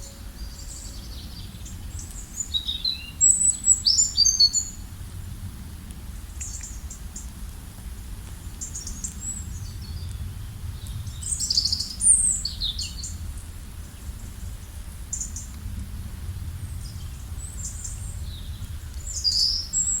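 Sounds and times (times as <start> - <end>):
songbirds chirping: 0.0 - 4.9, 8.5 - 15.7, 16.4 - 20.0
steady low rumble: 4.6 - 20.0.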